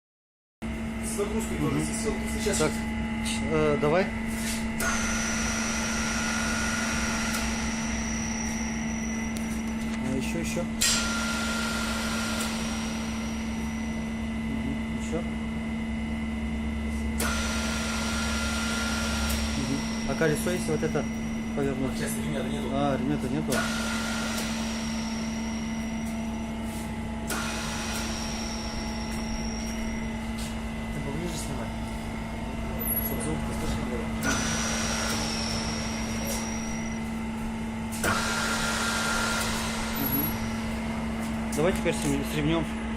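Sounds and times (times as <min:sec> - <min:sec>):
electric motor humming: 0:04.8 - 0:09.7, 0:10.9 - 0:14.2, 0:17.1 - 0:22.3, 0:23.3 - 0:26.1, 0:27.2 - 0:42.9
electric motor whining: 0:32.1 - 0:37.2, 0:37.9 - 0:41.2.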